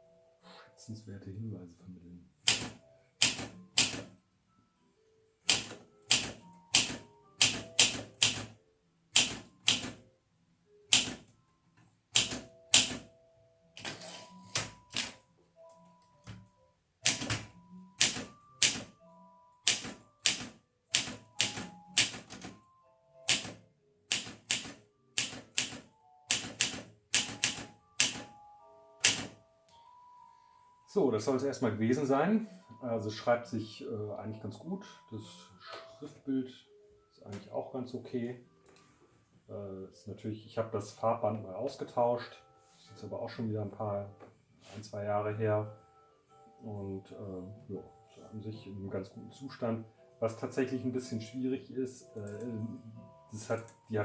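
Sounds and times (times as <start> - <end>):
typewriter keystrokes: 2.4 - 4.1, 5.5 - 8.6, 9.2 - 10.0, 10.9 - 11.3, 12.2 - 13.1, 13.8 - 15.2, 17.0 - 18.9, 19.6 - 22.6, 23.3 - 28.3, 29.0 - 29.4.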